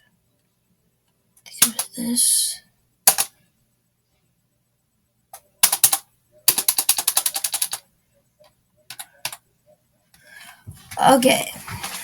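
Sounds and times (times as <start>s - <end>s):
keyboard keys clicking: 3.1s - 3.3s, 5.6s - 7.8s, 8.9s - 9.4s.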